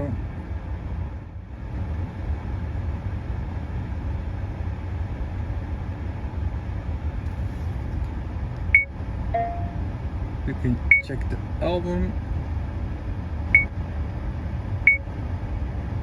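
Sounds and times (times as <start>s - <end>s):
car engine rumble: 0.0s - 16.0s
high-pitched beep: 8.8s - 9.8s.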